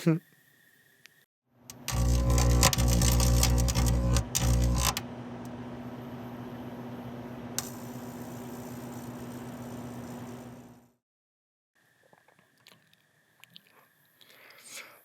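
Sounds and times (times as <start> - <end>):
microwave click: 1.7 - 5.6
microwave oven humming: 1.7 - 10.9.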